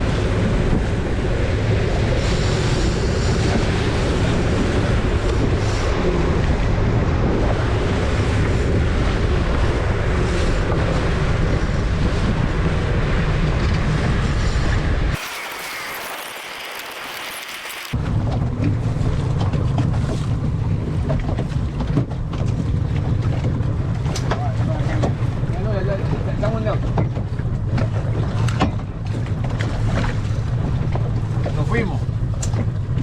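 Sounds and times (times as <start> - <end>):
water noise: 15.2 - 18.0.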